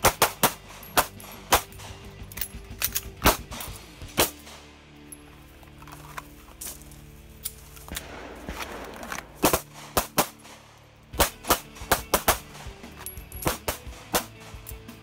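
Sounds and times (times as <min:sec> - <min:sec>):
handgun shots: 0:00.0 - 0:04.8, 0:07.8 - 0:14.8.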